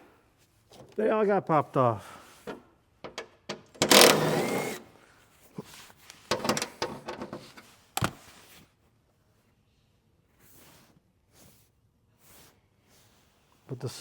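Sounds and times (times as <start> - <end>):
tool clicks and knocks: 2.5 - 4.8, 6.3 - 7.4.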